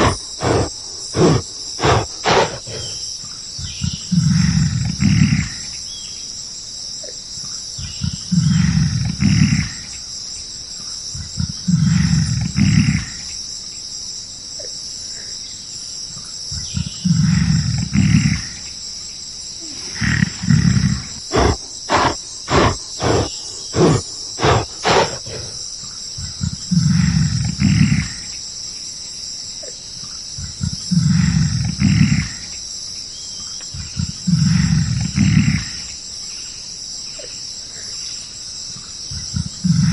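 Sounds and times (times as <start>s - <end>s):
animal sharp calls: 0.0s - 3.0s, 19.7s - 25.6s
animal deep roar-like grunts: 0.0s - 5.8s, 7.8s - 10.1s, 11.1s - 13.4s, 16.5s - 18.7s, 19.6s - 28.4s, 30.3s - 32.6s, 33.7s - 36.0s, 39.1s - 39.9s
insects chirring: 0.0s - 39.9s.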